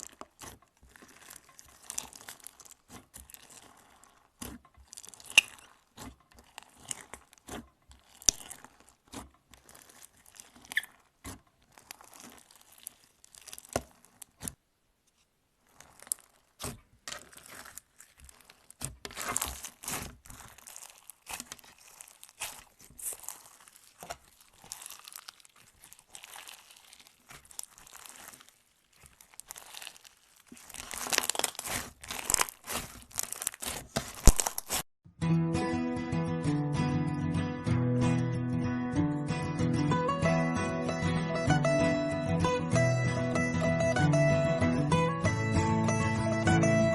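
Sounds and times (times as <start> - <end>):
slime crackling and popping: 0.0 - 14.6, 15.5 - 34.9.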